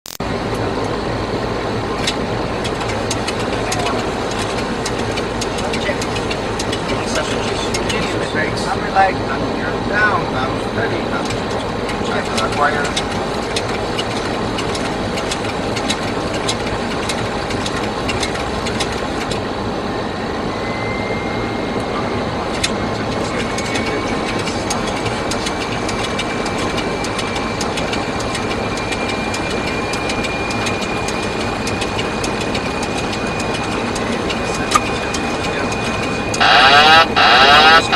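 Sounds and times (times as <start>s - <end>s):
aircraft engine drone: 0.1s - 37.9s
thin whine rising in pitch: 19.6s - 37.9s.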